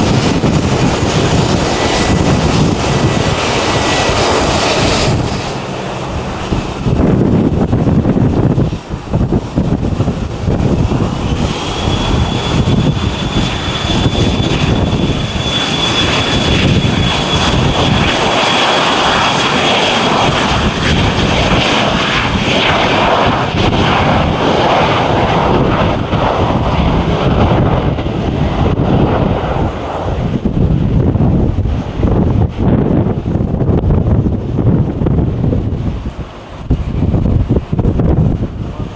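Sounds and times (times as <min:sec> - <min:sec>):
high engine whine: 0:00.0 - 0:38.9
jet engines rumbling: 0:00.0 - 0:38.9.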